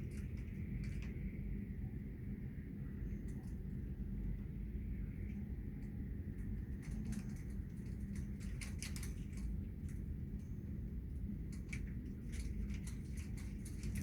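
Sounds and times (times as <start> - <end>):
low rumble of rain: 0.0 - 14.0.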